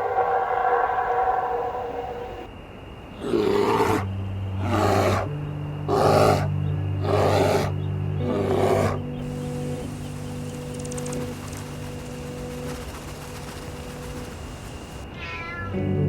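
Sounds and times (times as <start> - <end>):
steady low hum: 0.0 - 15.1
large animal calling loudly: 3.2 - 5.3, 5.9 - 9.5.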